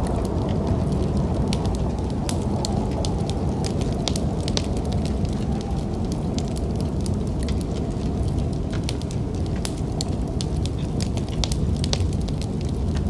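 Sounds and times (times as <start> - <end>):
low rumble: 0.0 - 13.0
wood fire crackling and popping: 0.0 - 13.0.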